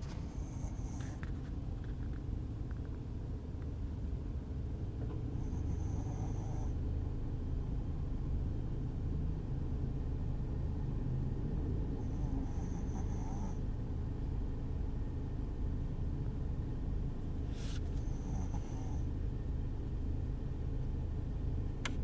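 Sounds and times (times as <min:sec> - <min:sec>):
dog snoring: 0:00.1 - 0:01.3, 0:05.4 - 0:06.8, 0:12.0 - 0:13.6, 0:17.9 - 0:19.1
car road rumble: 0:13.6 - 0:22.0.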